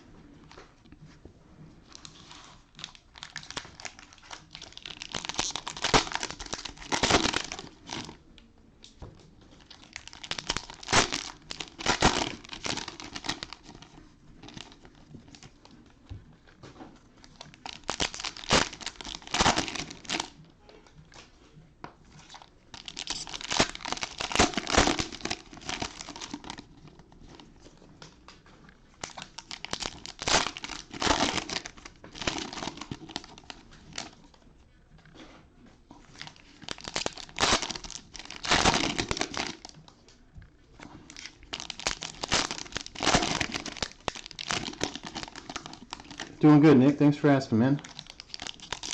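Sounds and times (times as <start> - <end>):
cellophane wrappers tearing and crinkling: 1.9 - 8.2, 9.5 - 15.8, 17.2 - 20.4, 22.2 - 27.7, 28.9 - 34.4, 36.1 - 39.8, 40.9 - 46.6, 47.8 - 48.9.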